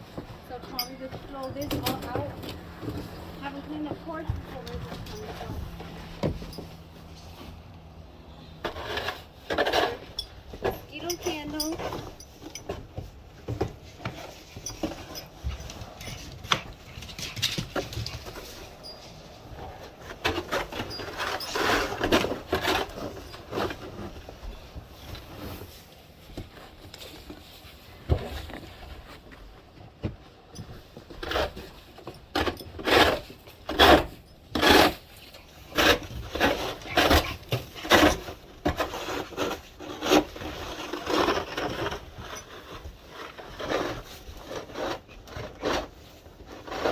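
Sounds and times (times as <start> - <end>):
snow shovel scraping: 32.8 - 46.9.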